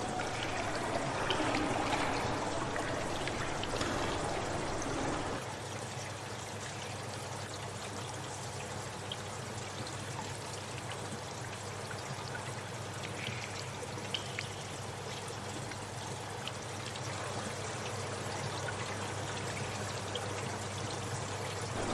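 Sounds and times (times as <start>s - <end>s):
water trickling: 0.0s - 5.4s
faint drip-like ticks: 12.2s - 18.0s.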